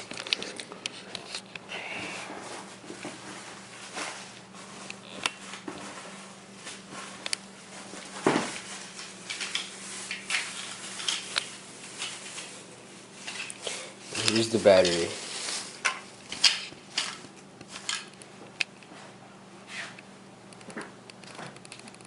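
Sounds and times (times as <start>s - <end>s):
clicks and knocks of parts handled: 15.8s - 18.9s, 20.5s - 22.0s.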